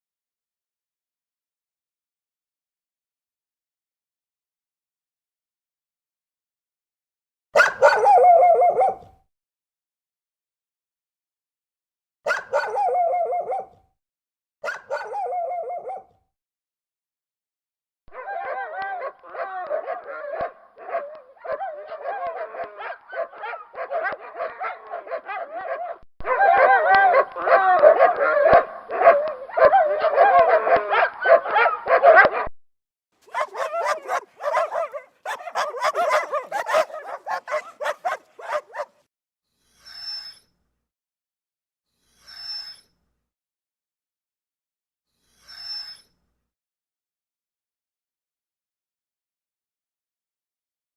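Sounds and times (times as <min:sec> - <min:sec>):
dogs barking and yelping: 0:07.6 - 0:09.2, 0:12.3 - 0:13.8, 0:14.6 - 0:16.2, 0:18.1 - 0:32.5, 0:33.2 - 0:39.1.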